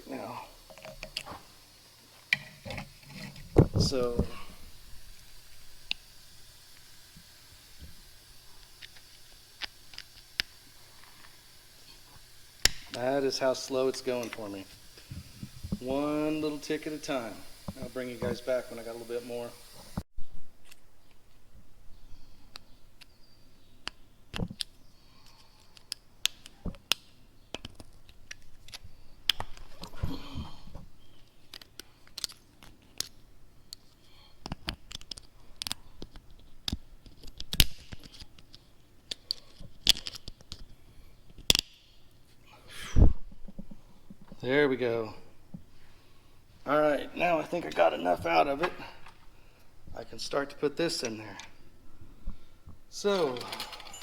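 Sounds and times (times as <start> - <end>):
metallic clicks of hand tools: 12.6 - 13.0.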